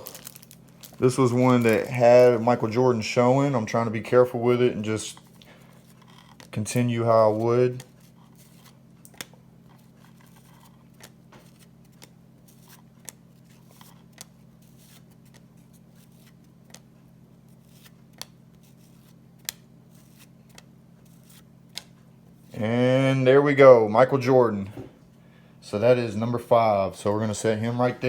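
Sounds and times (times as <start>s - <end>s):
plastic wrapper crinkling: 0.0s - 2.8s.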